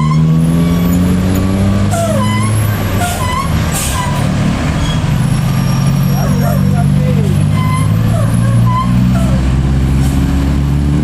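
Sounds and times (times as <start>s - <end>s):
diesel engine under load: 0.0s - 11.0s.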